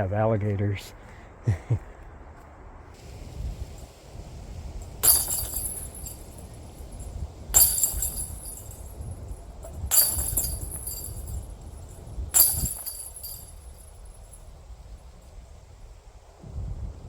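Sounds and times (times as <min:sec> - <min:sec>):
sharp metallic jingles: 0:04.7 - 0:14.5.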